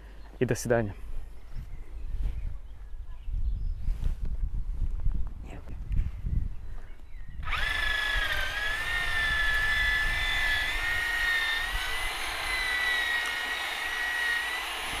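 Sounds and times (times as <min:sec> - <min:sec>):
power tool motor whining: 0:07.4 - 0:15.0.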